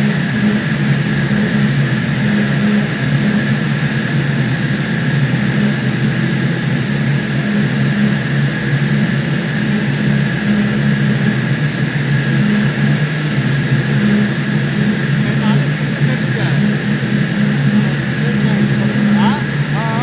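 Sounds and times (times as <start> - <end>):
compressor roaring: 0.0 - 20.0
high whine: 0.0 - 20.0
low wavering rumble: 0.0 - 20.0.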